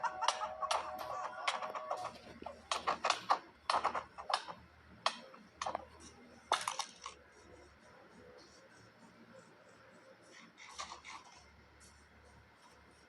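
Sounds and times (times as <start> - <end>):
sharp clicks and knocks: 0.2 - 7.2.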